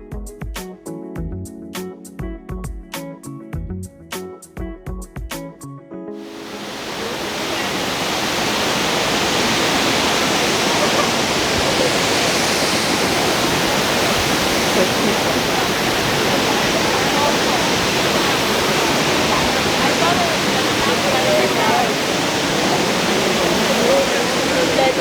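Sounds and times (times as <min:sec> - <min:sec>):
waterfall rushing: 0:06.2 - 0:25.0.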